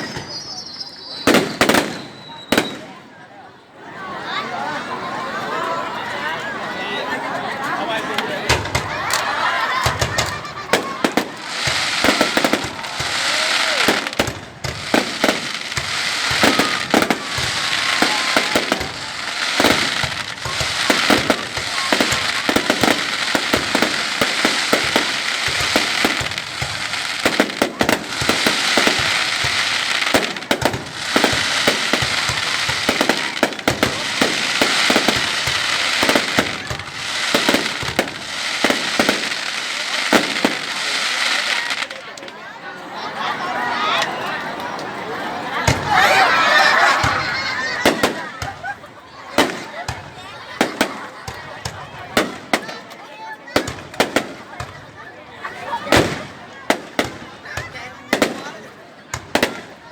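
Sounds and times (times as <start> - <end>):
fireworks bangs: 0.0 - 3.1, 8.1 - 42.3, 45.6 - 55.0, 55.6 - 59.9
fireworks crackling: 0.0 - 3.1, 7.5 - 42.4, 45.6 - 59.9.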